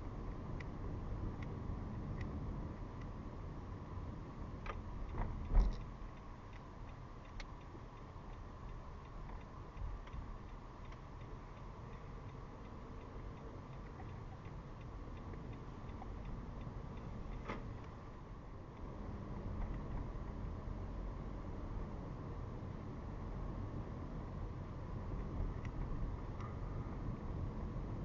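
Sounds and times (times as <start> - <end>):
road and engine rumble: 0.0 - 28.0
turn signal ticking: 4.6 - 20.5
thump: 5.2 - 5.8.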